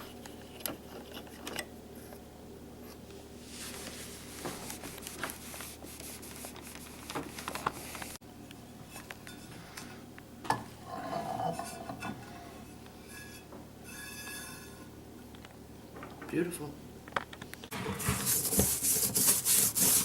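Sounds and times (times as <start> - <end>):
cloth wiping surfaces: 3.4 - 6.8, 17.7 - 20.0.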